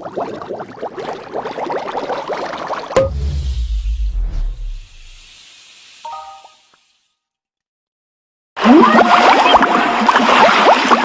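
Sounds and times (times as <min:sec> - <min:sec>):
sharp click: 0:03.0 - 0:05.2.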